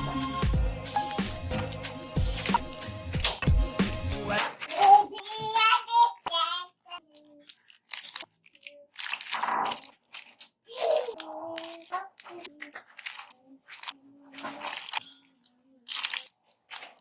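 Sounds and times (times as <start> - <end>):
packets crinkling and rustling: 7.0 - 17.0.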